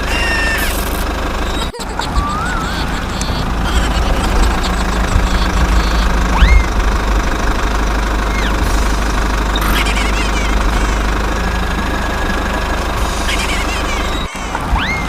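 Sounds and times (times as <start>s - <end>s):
engine rumbling: 0.0s - 15.0s
rising whistle-like chirps: 5.3s - 6.8s, 8.3s - 8.6s.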